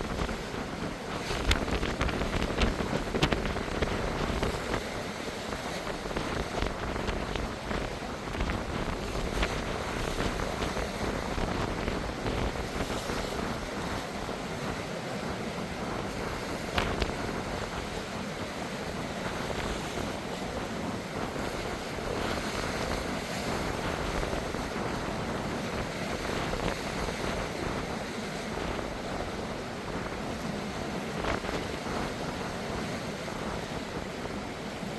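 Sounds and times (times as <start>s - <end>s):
sea surf: 0.0s - 34.9s
wind buffeting microphone: 0.0s - 34.9s.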